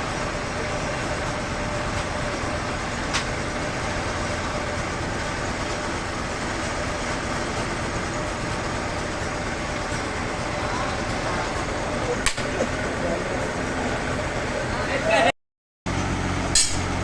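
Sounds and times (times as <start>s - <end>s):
sawmill machinery running: 0.0s - 15.3s, 15.9s - 17.0s
sharp click: 12.2s - 12.5s, 16.5s - 16.9s.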